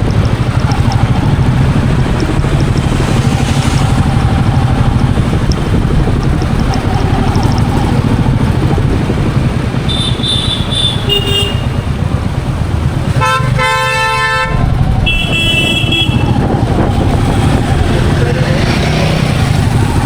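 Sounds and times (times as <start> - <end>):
motorcycle engine running: 0.0 - 20.0
vehicle horns honking: 9.8 - 12.1, 13.1 - 16.8.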